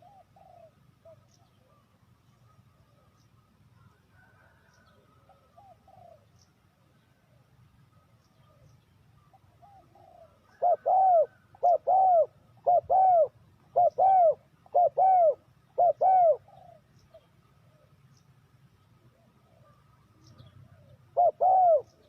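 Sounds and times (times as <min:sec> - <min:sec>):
dove cooing: 0:00.0 - 0:02.0, 0:04.1 - 0:06.4, 0:08.4 - 0:18.0, 0:19.0 - 0:22.0.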